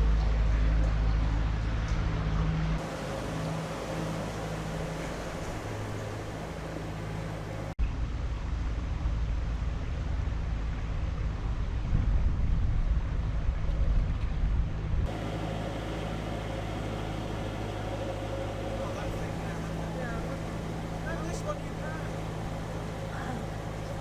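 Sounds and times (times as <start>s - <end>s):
diesel engine humming: 2.8s - 7.8s, 15.1s - 24.0s
uneven low rumble: 15.1s - 24.0s.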